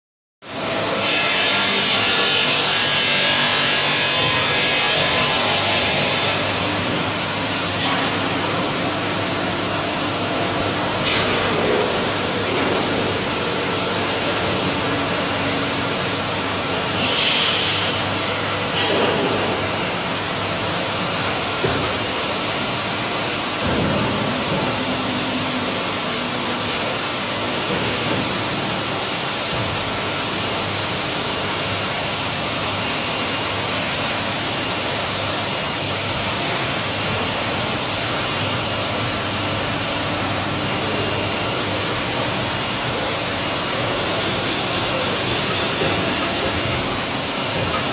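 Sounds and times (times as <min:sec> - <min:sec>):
machinery humming: 0:00.5 - 0:47.9.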